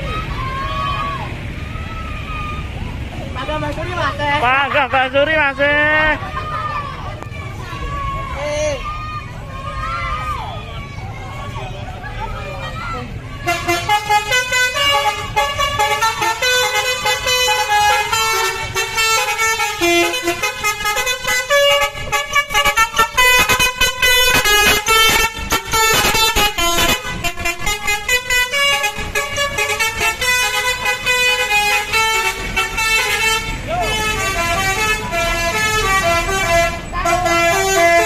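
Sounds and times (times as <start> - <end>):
musical bus horn: 13.3 - 38.0.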